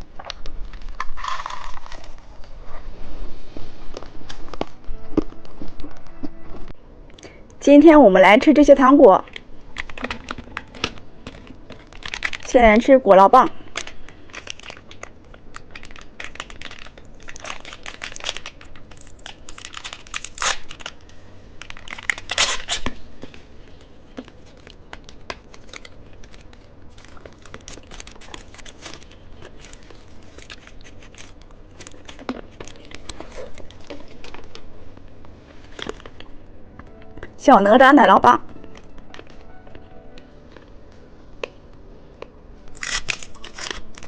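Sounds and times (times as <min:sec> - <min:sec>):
plastic wrapper crinkling and tearing: 0:00.0 - 0:02.5, 0:09.3 - 0:12.6, 0:13.8 - 0:22.9, 0:24.4 - 0:34.7, 0:42.7 - 0:44.0.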